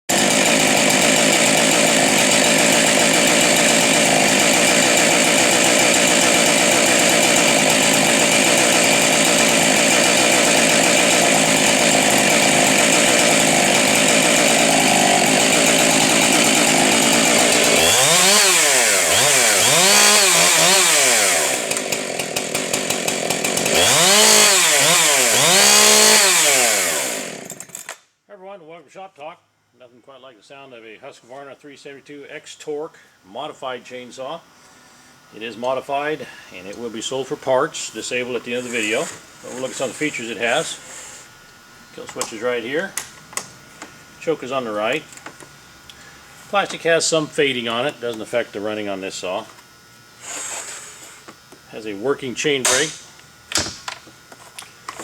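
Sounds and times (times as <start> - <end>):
chainsaw running and revving: 0.1 - 27.9, 38.2 - 40.9.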